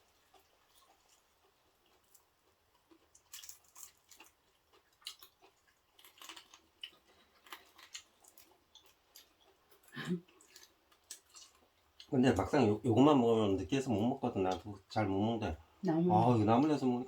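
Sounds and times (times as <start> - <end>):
person chewing crunchy food: 0.0 - 12.1.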